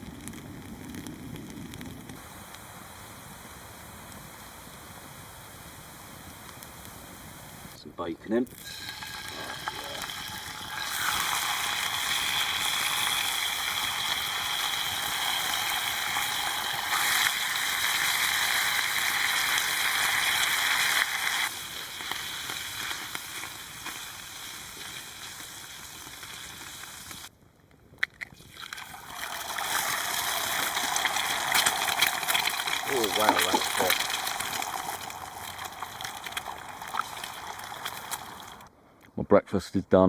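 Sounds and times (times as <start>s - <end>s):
bacon sizzling in a frying pan: 8.5s - 27.3s, 28.5s - 38.7s.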